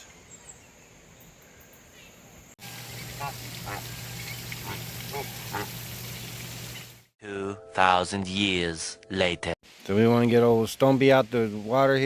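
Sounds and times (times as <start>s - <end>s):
raspy animal calls: 3.1s - 5.8s.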